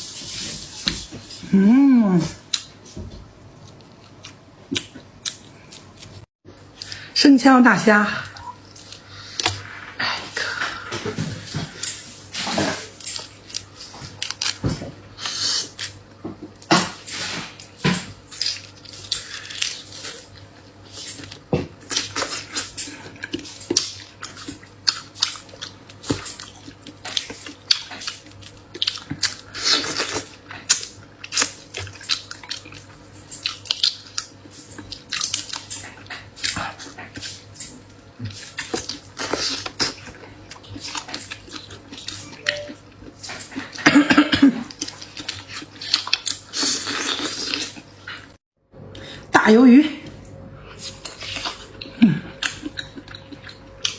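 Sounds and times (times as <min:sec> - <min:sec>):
wet chewing and slurping: 0:16.8 - 0:43.9, 0:44.6 - 0:48.4, 0:50.6 - 0:53.9.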